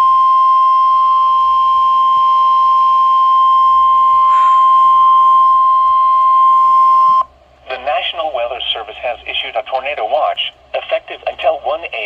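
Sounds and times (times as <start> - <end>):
steady alarm tone: 0.0 - 7.3.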